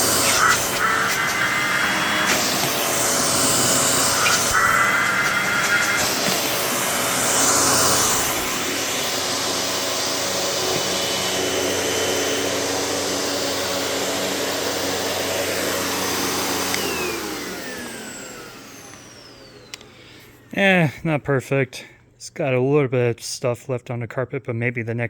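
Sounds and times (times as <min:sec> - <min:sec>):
motor whine winding down: 0:00.0 - 0:19.9
vacuum cleaner running: 0:00.0 - 0:20.5.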